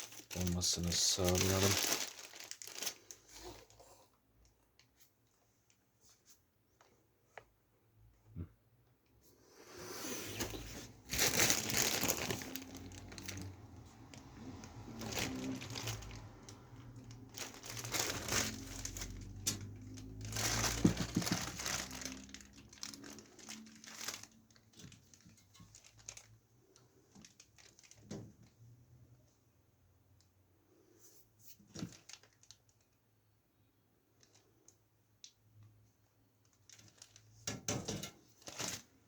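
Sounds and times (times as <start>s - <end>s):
packaging crinkling and rustling: 0.0s - 3.9s, 10.3s - 28.6s, 31.5s - 33.0s, 36.4s - 39.0s.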